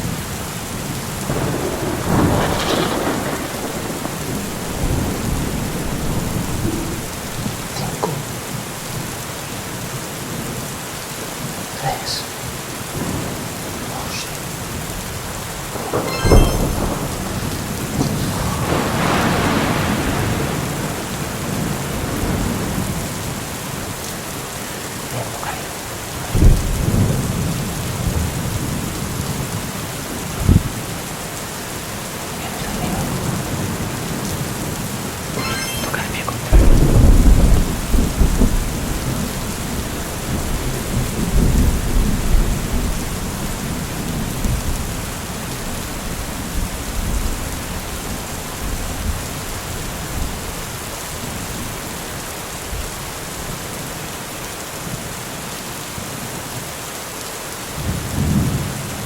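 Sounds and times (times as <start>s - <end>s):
thunder rumbling: 0.0s - 10.5s, 12.4s - 51.3s
steady rain: 0.0s - 59.0s
sharp thunderclap: 1.2s - 9.1s, 12.9s - 24.0s, 26.3s - 31.1s, 36.5s - 45.0s.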